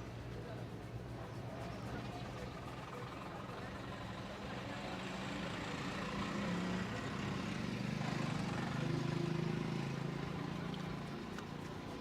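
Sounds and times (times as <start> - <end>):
street traffic: 0.0 - 12.0
vehicle engine running: 1.1 - 12.0.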